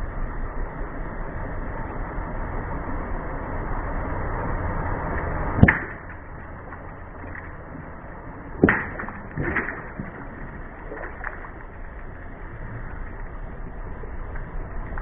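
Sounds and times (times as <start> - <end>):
steady rumble: 0.0 - 15.0
tyres crushing objects: 8.6 - 10.5.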